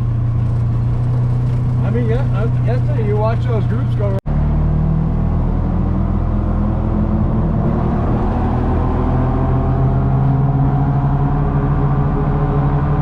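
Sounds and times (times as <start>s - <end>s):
loud low drone: 4.3s - 13.0s.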